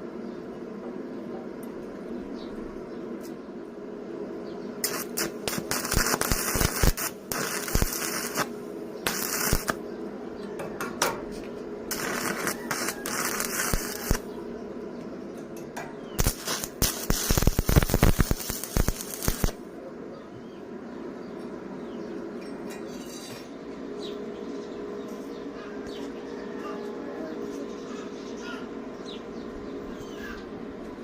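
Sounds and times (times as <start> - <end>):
welding arc crackling: 4.8 - 9.8, 11.9 - 14.3, 16.2 - 19.6.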